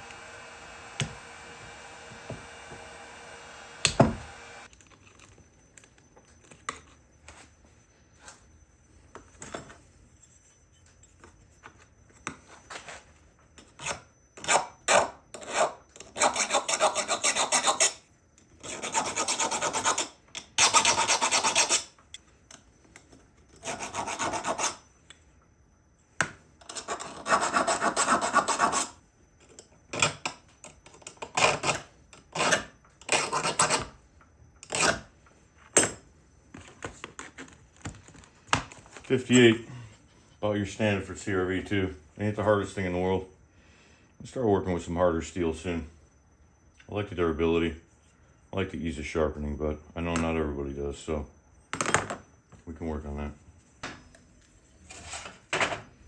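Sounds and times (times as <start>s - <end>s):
rasping strokes on knife: 13.8s - 18.0s, 18.6s - 22.0s, 23.6s - 24.8s.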